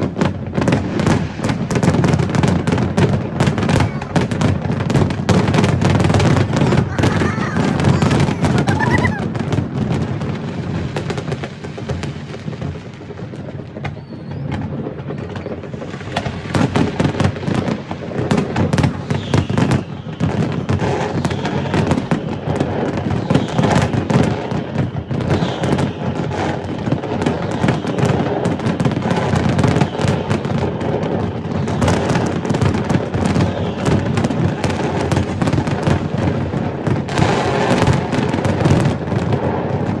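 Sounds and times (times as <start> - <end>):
fireworks bangs and crackles: 0.0 - 40.0.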